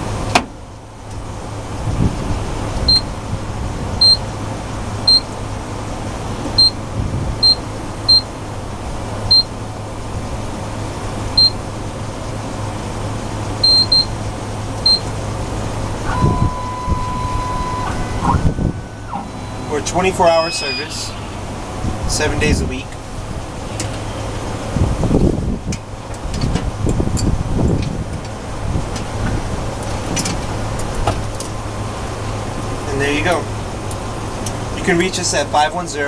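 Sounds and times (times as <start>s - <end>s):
steady tone: 14.8s - 24.6s
short high beeps: 16.0s - 22.6s.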